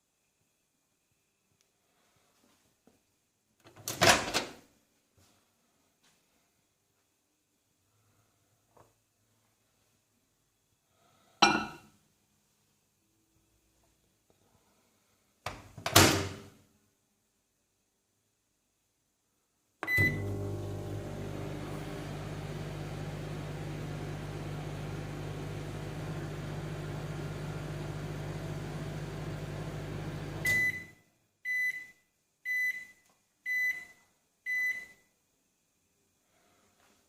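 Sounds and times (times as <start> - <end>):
microwave beeps: 19.8 - 21.6, 30.2 - 35.1
microwave oven humming: 19.8 - 30.9.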